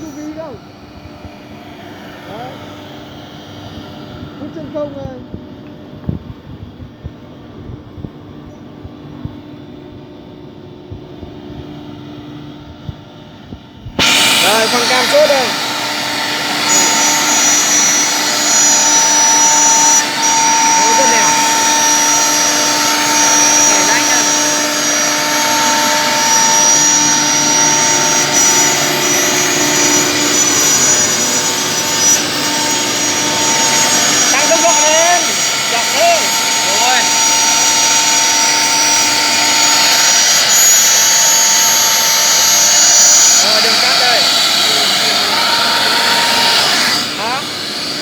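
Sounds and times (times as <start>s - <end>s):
router machine humming: 0.0s - 5.9s, 12.9s - 48.0s
vacuum rushing: 13.8s - 48.0s.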